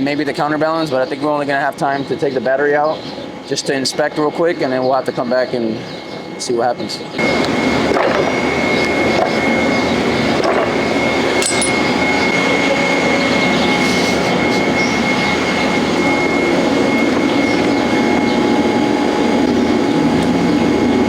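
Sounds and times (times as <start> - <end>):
high steady whine: 0.0 - 21.0
machinery running: 7.1 - 21.0.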